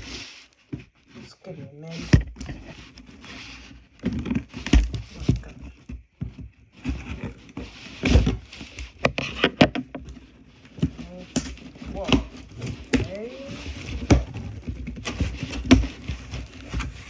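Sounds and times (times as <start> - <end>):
package rustling and crinkling: 6.6 - 17.0.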